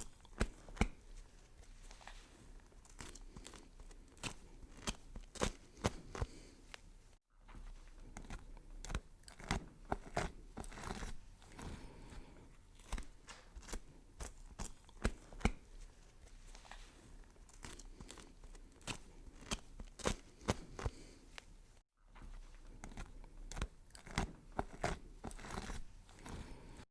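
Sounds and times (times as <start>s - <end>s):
knife chopping vegetables: 0.0s - 1.2s, 3.0s - 6.5s, 8.1s - 15.8s, 17.5s - 21.1s, 22.8s - 26.8s.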